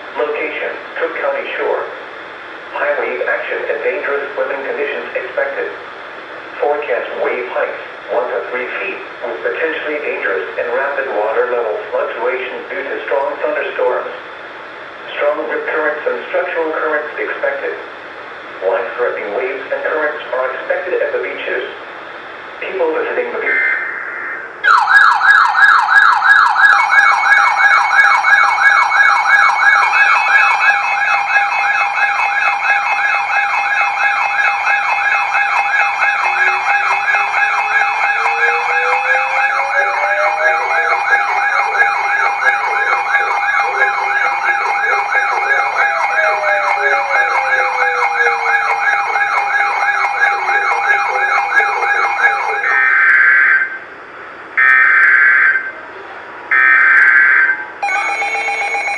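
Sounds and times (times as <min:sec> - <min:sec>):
electronic warbling siren: 0:24.6 - 0:53.4, 0:57.8 - 0:58.9
slow rising and falling tone: 0:24.7 - 0:52.8, 0:57.8 - 0:58.9
short high tone bursts: 0:57.8 - 0:58.9.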